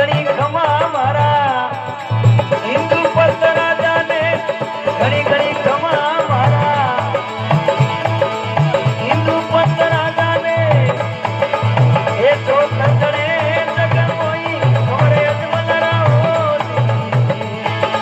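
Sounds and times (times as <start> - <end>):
hand drum beat: 0.0 - 18.0.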